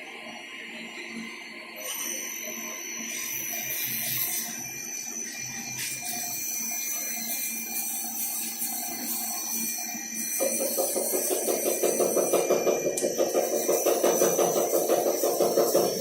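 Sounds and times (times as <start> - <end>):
machine high whine: 0.0 - 16.0.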